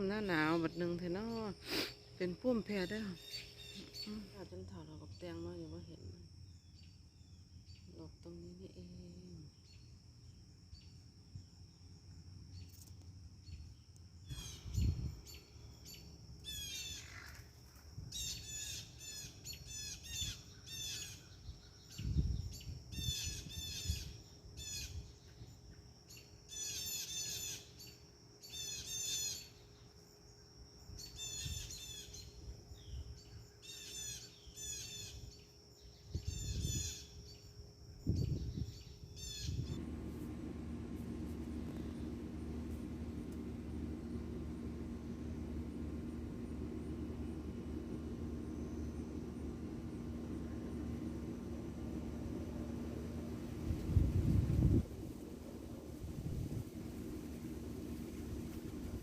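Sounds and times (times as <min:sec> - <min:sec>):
wind rumbling on microphone: 0:14.3 - 0:15.2, 0:38.0 - 0:42.3, 0:50.8 - 0:59.0.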